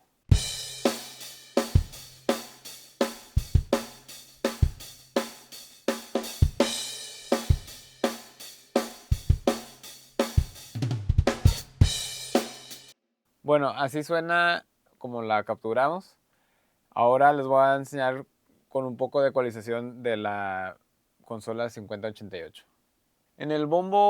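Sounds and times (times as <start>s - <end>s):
snare drum: 0.3s - 12.9s
hi-hat: 0.4s - 12.9s
kick drum: 3.4s - 3.7s, 6.4s - 6.7s, 9.1s - 9.6s, 10.4s - 12.1s.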